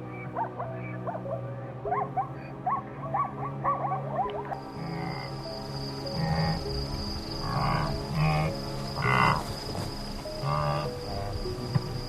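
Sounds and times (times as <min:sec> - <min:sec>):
background music: 0:00.0 - 0:12.0.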